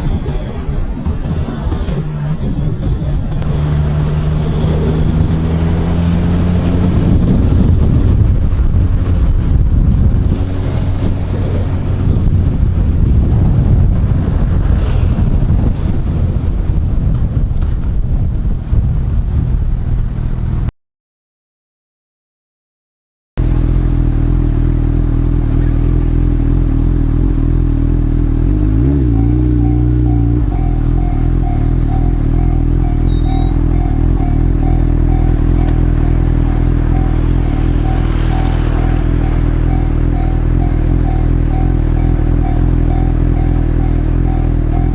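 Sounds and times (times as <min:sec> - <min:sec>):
wind rushing over microphone: 0:00.0 - 0:20.7.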